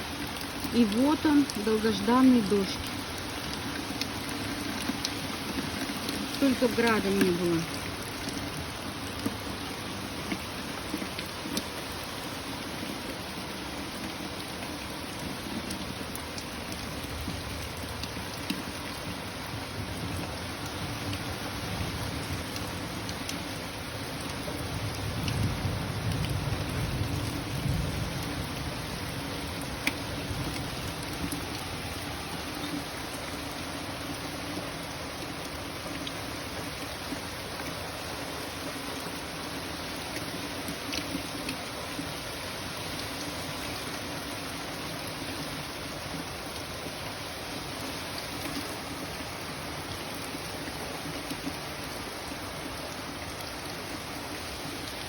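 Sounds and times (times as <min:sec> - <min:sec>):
raindrops ticking: 0:00.0 - 0:43.2
rain falling: 0:00.0 - 0:55.0.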